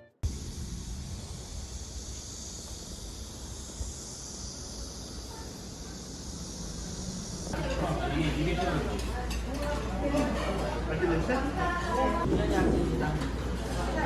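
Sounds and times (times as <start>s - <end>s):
insects buzzing: 0.2s - 7.6s.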